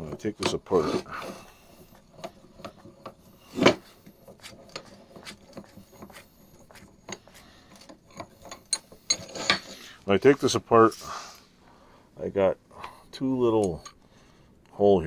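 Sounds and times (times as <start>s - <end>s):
metal vise parts clicking: 6.8s - 9.8s.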